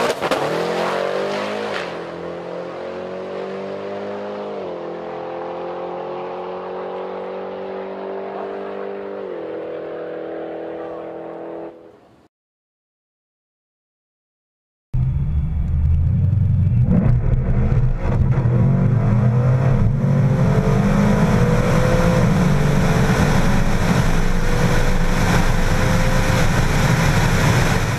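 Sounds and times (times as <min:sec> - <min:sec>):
engine deep rumble: 0:15.0 - 0:27.9
supercharger whine: 0:15.0 - 0:27.9.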